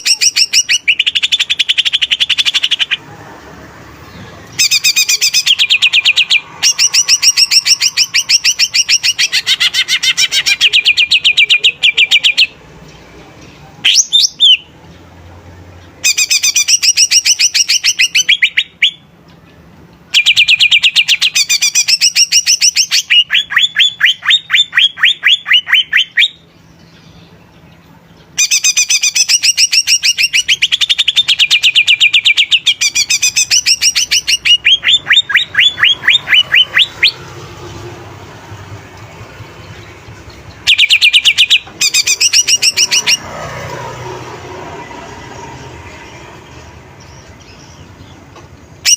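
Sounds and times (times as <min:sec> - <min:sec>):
bird singing fast high notes: 0:28.4 - 0:37.3.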